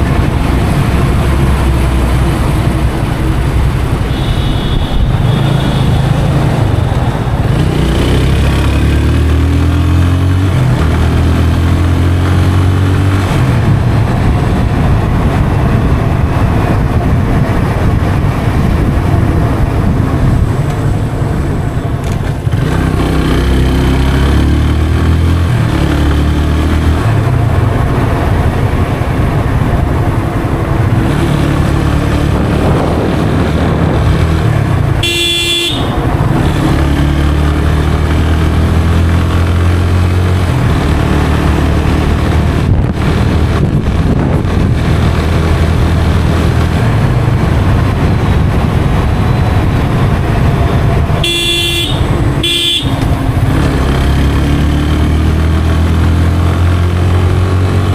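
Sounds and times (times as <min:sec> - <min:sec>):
motorcycle engine accelerating: 0:00.0 - 0:57.9
wind on microphone: 0:13.0 - 0:23.9, 0:27.0 - 0:35.0, 0:40.3 - 0:57.9.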